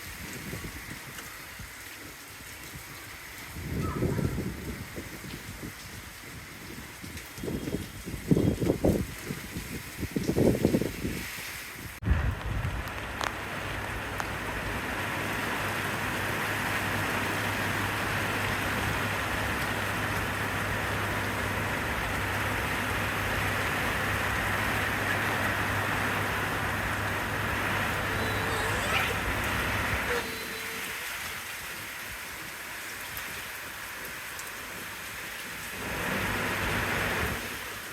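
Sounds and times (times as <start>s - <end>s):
heavy rain falling: 0.0s - 37.9s
low rumble: 12.0s - 15.0s.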